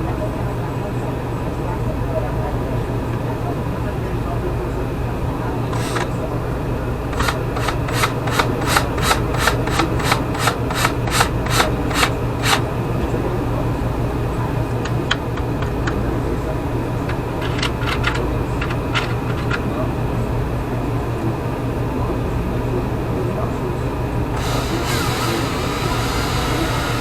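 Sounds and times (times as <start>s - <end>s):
steady low hum: 0.0s - 27.0s
hand tool rasping: 5.7s - 6.1s, 7.1s - 12.6s, 24.4s - 27.0s
scattered clicks: 5.7s - 6.1s, 7.1s - 12.6s, 17.1s - 19.7s, 24.4s - 27.0s.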